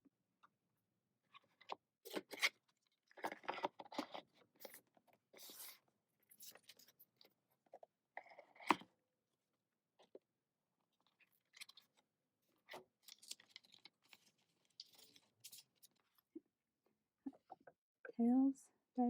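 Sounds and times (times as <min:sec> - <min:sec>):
paper and plastic packaging rustling: 0:12.7 - 0:16.3.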